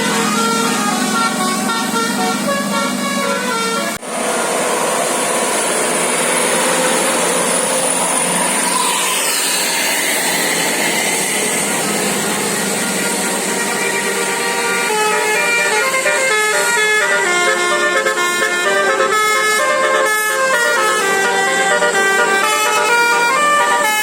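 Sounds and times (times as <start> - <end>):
bus musical air horn melody: 0.0 - 24.0
traffic rushing: 0.0 - 24.0.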